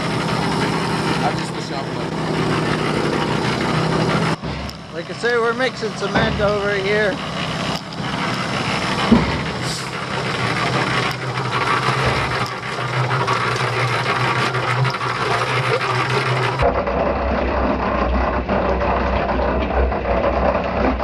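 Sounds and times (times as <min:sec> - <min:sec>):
cement mixer drum churning: 0:00.0 - 0:21.0
motor hum: 0:00.0 - 0:21.0.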